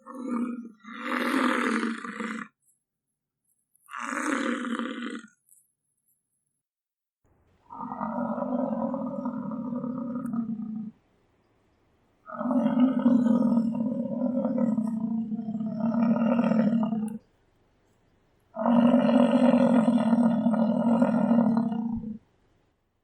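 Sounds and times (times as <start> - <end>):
bison roaring: 7.7 - 11.0, 12.3 - 17.2, 18.6 - 22.2.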